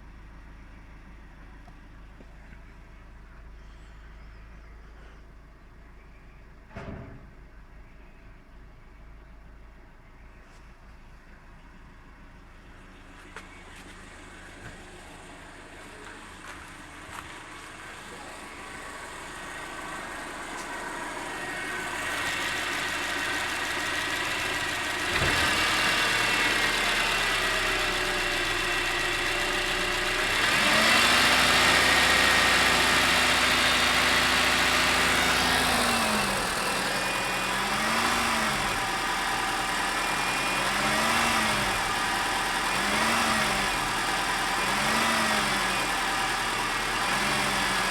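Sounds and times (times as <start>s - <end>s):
car engine running and revving: 12.4s - 47.9s.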